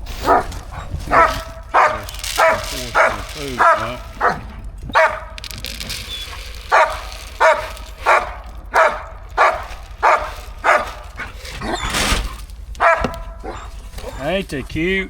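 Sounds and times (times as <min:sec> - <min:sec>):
dog barking: 0:00.1 - 0:05.4, 0:06.6 - 0:11.8, 0:12.8 - 0:14.2.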